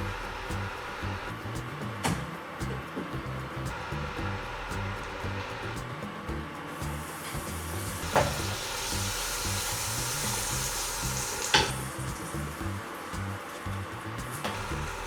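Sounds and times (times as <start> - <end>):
quiet background music: 0.0 - 15.0
flatbread sizzling in butter: 6.7 - 15.0.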